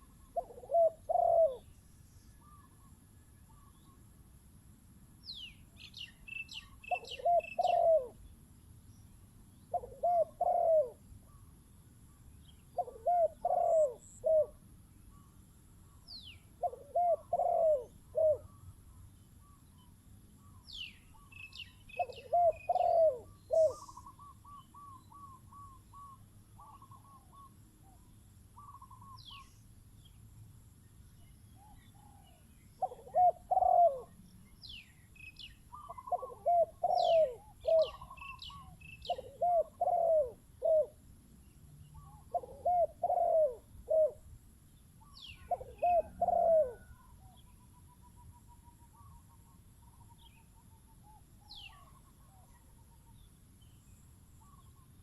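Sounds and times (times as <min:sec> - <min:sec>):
doves cooing: 0:00.0 - 0:01.6, 0:06.9 - 0:08.2, 0:09.7 - 0:11.0, 0:12.8 - 0:14.6, 0:16.6 - 0:18.5, 0:22.0 - 0:27.5, 0:32.0 - 0:34.2, 0:35.7 - 0:41.0, 0:42.0 - 0:44.2, 0:45.4 - 0:47.2
small birds chirping: 0:05.2 - 0:55.0.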